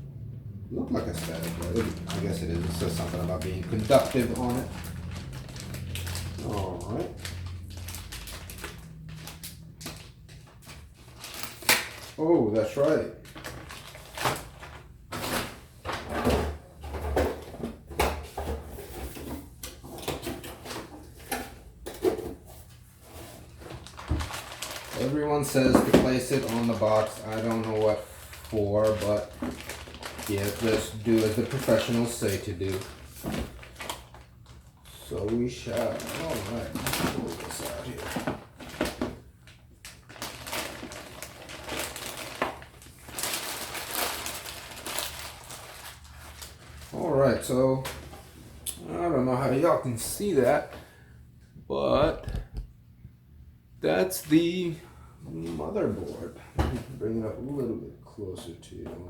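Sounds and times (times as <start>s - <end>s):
rustling of cardboard and plastic bag: 0.9s - 21.4s, 22.0s - 48.6s.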